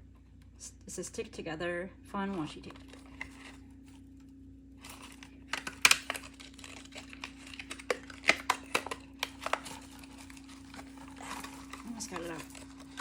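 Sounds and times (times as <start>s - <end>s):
faint steady hum: 0.0s - 13.0s
tape rolls clicking out of packaging: 4.8s - 13.0s.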